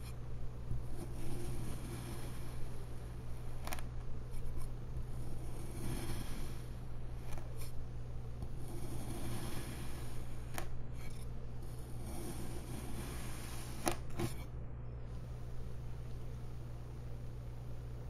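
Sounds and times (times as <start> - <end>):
steady low hum: 0.0 - 18.0
blade scraping through sand: 1.0 - 2.7, 5.3 - 6.8, 8.6 - 10.4, 12.0 - 14.0.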